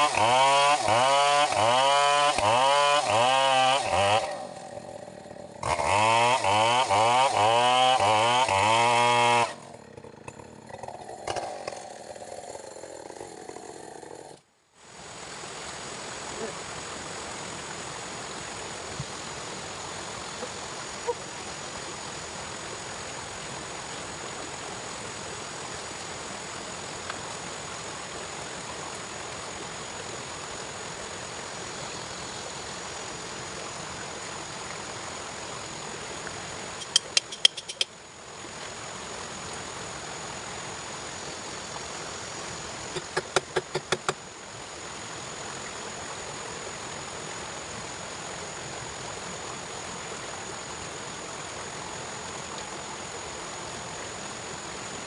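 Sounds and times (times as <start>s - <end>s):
water flowing: 9.6s - 55.0s
sharp clicks or taps: 43.0s - 44.2s.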